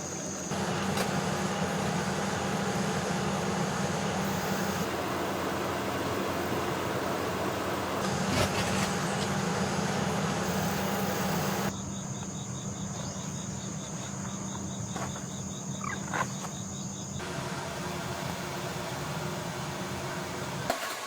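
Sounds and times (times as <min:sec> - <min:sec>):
steady hiss: 0:00.0 - 0:11.7, 0:17.2 - 0:21.0
insects chirping: 0:00.0 - 0:20.8.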